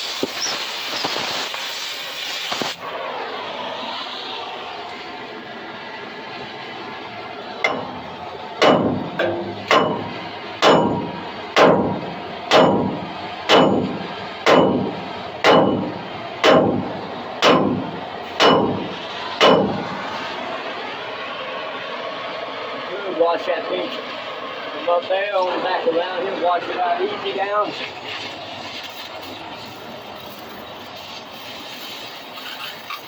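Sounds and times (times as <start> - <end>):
hammer striking metal: 7.6 - 20.0.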